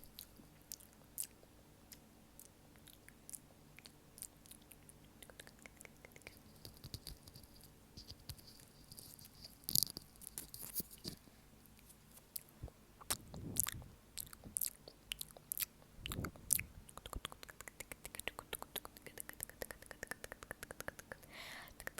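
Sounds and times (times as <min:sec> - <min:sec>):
wet mouth clicks and lip smacks: 0:00.1 - 0:07.2, 0:12.4 - 0:21.9.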